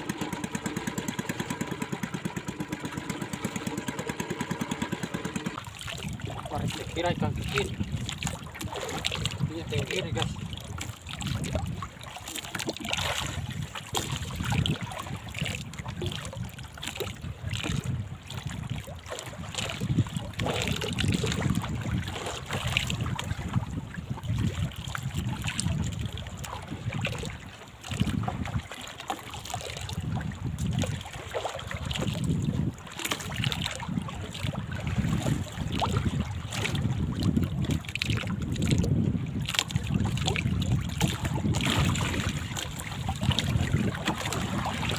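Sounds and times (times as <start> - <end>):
water sounds: 0.0 - 44.9
wind buffeting microphone: 4.6 - 28.8, 29.4 - 44.9.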